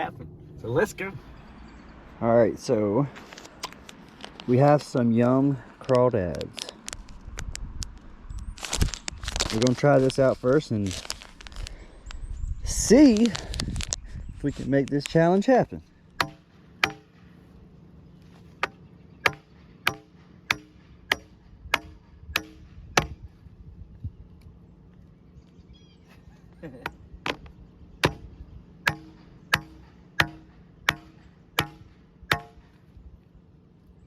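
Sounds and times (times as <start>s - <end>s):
sharp ringing knocks: 16.2s - 17.3s, 18.6s - 23.2s, 28.0s - 32.8s.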